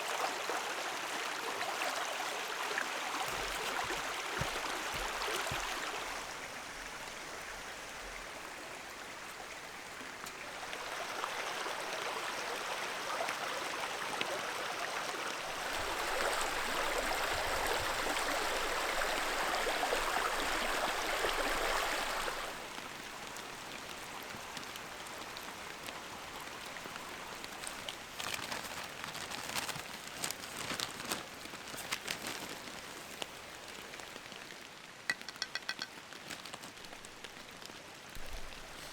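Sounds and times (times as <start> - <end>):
raindrops ticking on a tarp: 0.0 - 11.4, 22.6 - 38.9
stream rushing: 0.0 - 35.9
rain: 0.0 - 38.9.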